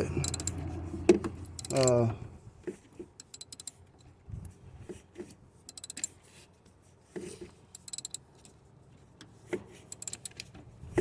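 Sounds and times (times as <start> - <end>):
socket ratchet clicking: 0.2 - 0.6, 1.5 - 2.0, 3.2 - 3.8, 5.7 - 6.1, 7.8 - 8.2, 9.9 - 10.5.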